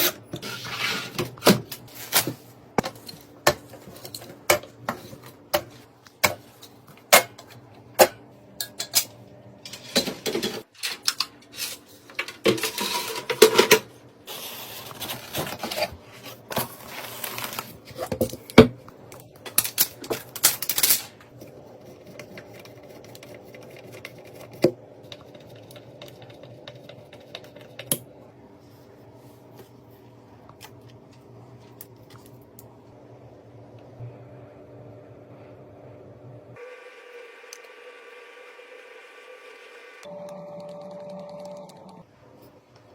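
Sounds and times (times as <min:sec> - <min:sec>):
faint steady hum: 0:01.2 - 0:39.1, 0:39.9 - 0:42.9.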